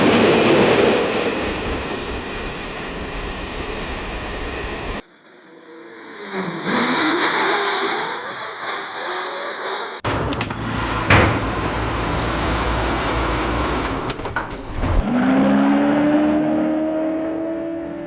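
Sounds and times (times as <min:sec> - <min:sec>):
loud rushing vehicle noise: 0:10.0 - 0:17.8
car engine revving: 0:10.0 - 0:18.0.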